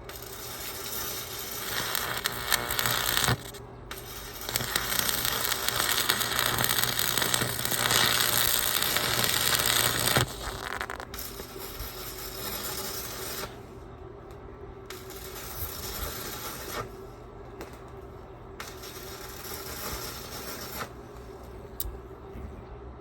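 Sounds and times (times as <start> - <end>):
arc welding crackle: 0.0 - 13.7, 14.8 - 21.9.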